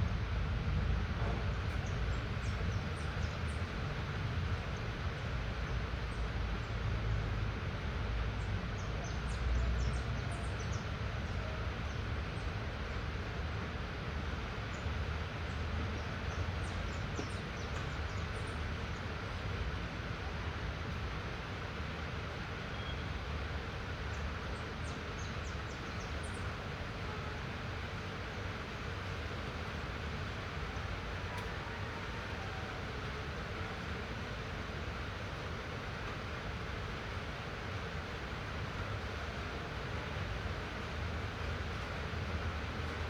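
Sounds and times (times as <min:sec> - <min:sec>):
light rain hissing: 0:20.7 - 0:43.0.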